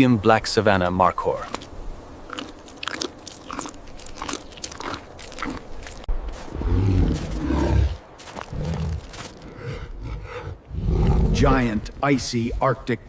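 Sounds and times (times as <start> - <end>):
animal chewing and crunching: 1.3 - 9.8
low rumbling noise: 3.9 - 13.0.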